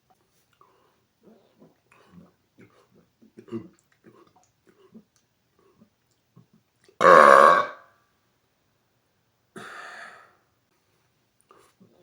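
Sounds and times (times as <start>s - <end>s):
man burping: 7.0s - 7.8s.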